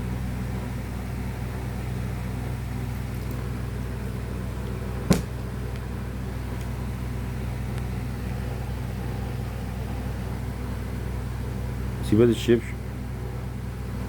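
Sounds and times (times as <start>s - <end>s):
low mechanical hum: 0.0s - 14.0s
sharp knock: 5.1s - 5.3s.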